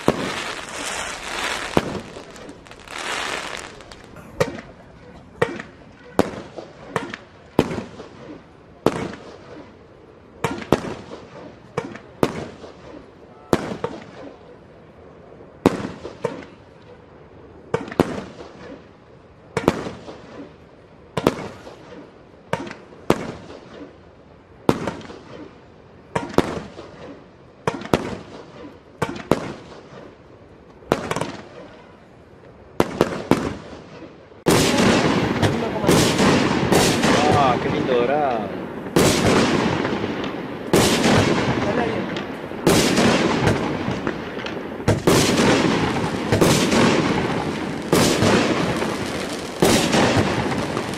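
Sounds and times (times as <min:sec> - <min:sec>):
fireworks bangs with echo: 0:00.0 - 0:04.8, 0:05.4 - 0:09.5, 0:10.4 - 0:14.2, 0:26.1 - 0:30.2, 0:30.9 - 0:31.6, 0:32.8 - 0:50.9.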